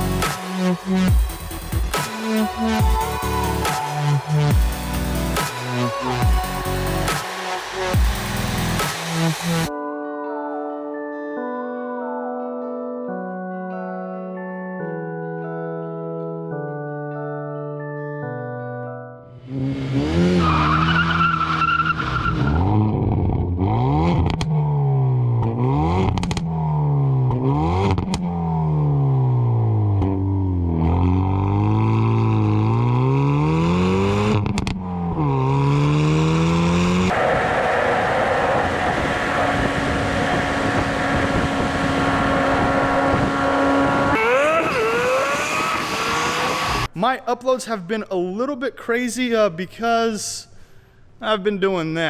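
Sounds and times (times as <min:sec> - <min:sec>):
car engine revving: 0:00.0 - 0:09.7, 0:19.5 - 0:46.9.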